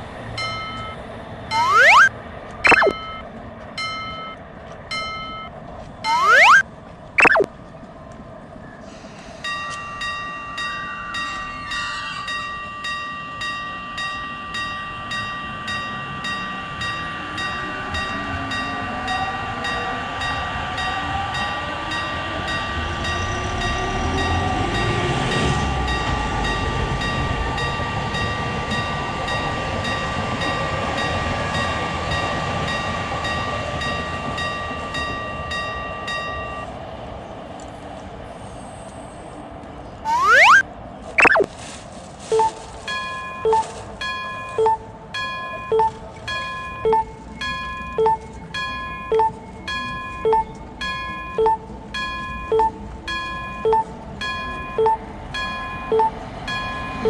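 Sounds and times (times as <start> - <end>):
level crossing warning bell: 0.4 - 2.1, 2.7 - 6.6, 9.4 - 36.8, 42.4 - 57.0
held electronic tone: 0.7 - 2.1, 2.7 - 3.2, 6.1 - 6.6, 7.2 - 7.5, 40.1 - 40.6, 41.2 - 41.5, 43.4 - 43.7, 44.5 - 44.8, 45.5 - 46.0, 46.8 - 47.1, 47.9 - 48.2, 48.8 - 57.0.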